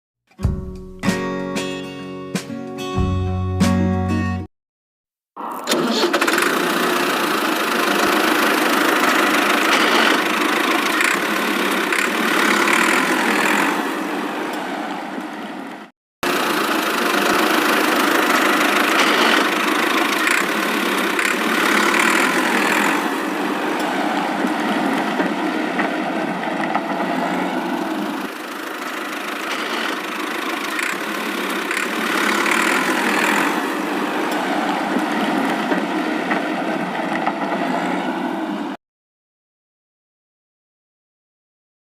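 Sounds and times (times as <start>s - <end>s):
tractor engine running: 5.7s - 14.6s, 16.2s - 37.6s.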